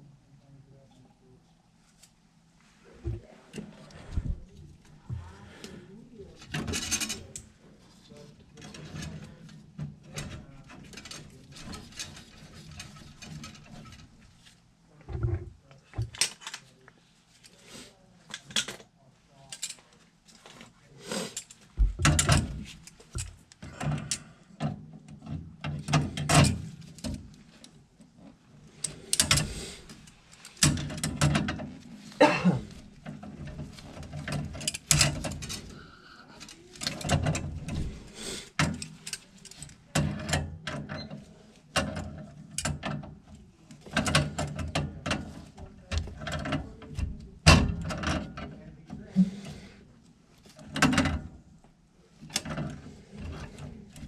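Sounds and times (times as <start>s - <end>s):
hand tools clanking on metal pipes: 28.8s - 41.2s.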